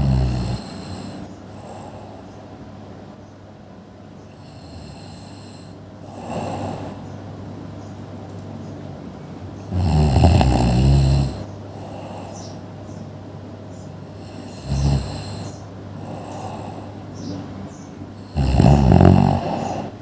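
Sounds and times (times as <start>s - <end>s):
person snoring: 0.0s - 2.2s, 4.4s - 7.0s, 9.7s - 12.5s, 14.0s - 17.0s, 18.2s - 20.0s.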